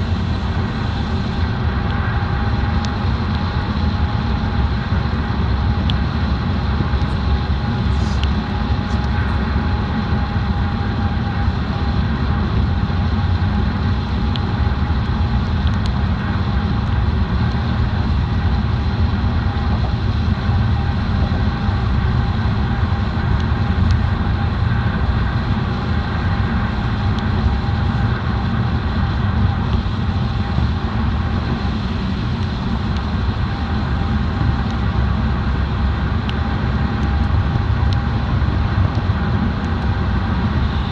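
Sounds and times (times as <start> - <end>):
faint steady whine: 0.0 - 40.9.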